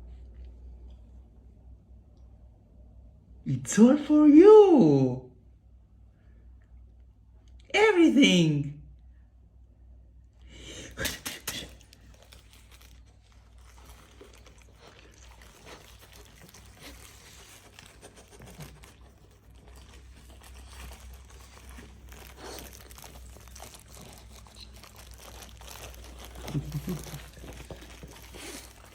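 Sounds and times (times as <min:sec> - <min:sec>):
small crackles: 0:11.0 - 0:28.9
food packaging crinkling: 0:11.1 - 0:28.9.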